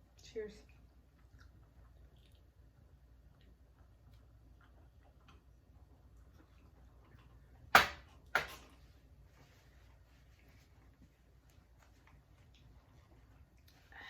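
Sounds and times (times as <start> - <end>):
faint eating clicks: 0.0 - 8.8.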